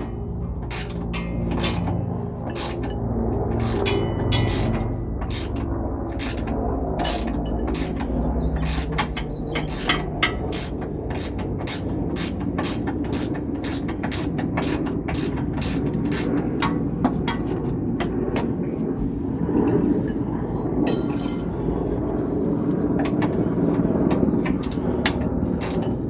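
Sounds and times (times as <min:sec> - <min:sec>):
socket ratchet clicking: 0:00.0 - 0:16.8.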